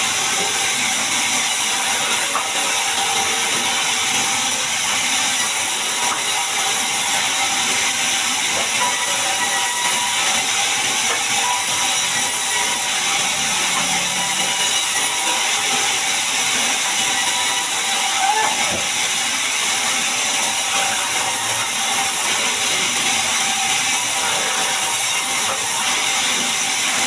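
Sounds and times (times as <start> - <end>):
band saw cutting log: 0.0 - 27.0.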